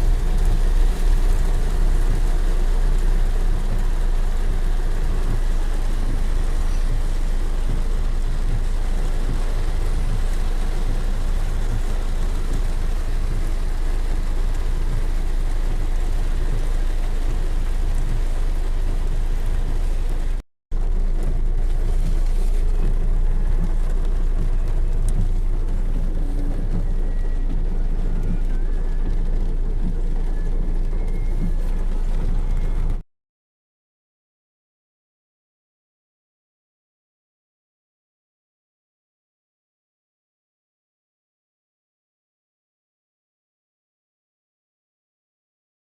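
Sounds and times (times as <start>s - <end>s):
heavy rain pouring: 0.0s - 33.0s.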